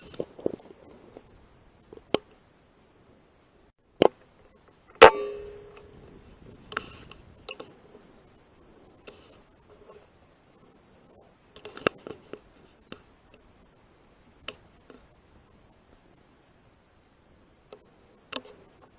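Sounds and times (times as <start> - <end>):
faint click: 14.4 - 15.1.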